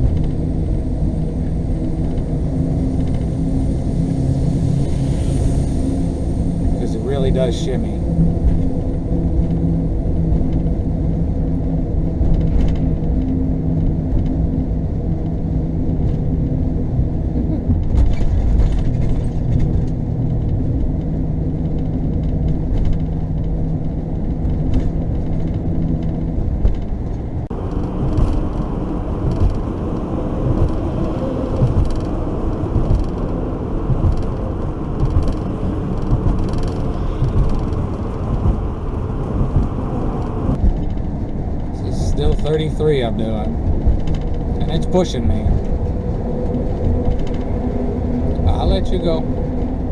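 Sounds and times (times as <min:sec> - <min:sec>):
hissy road noise: 0:00.0 - 0:08.2, 0:27.4 - 0:40.6
road rumble inside vehicle: 0:00.0 - 0:49.9.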